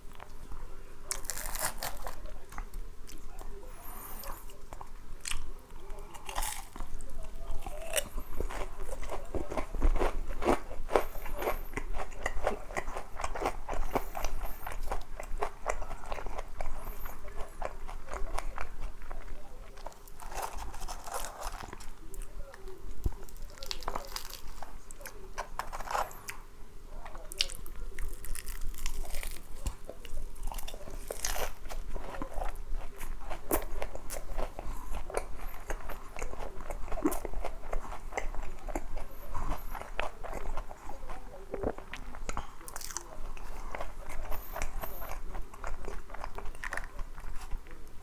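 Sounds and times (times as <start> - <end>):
crunching and chewing fried chicken: 0.0 - 48.0.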